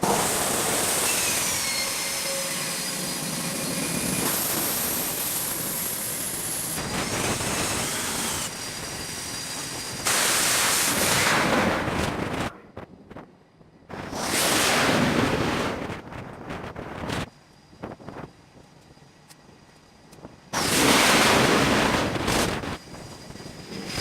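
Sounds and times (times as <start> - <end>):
jet engine turbine whine: 0.0 - 24.0.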